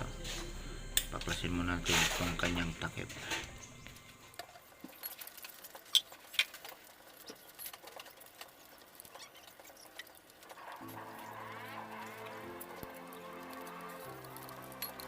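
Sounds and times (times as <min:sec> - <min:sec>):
hand tools clicking and scraping: 0:04.3 - 0:15.0.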